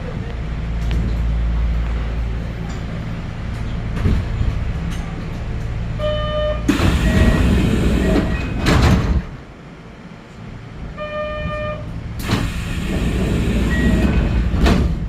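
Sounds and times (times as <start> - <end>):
train equipment humming: 0.0 - 15.0
air doors hissing: 6.6 - 9.4, 11.7 - 15.0.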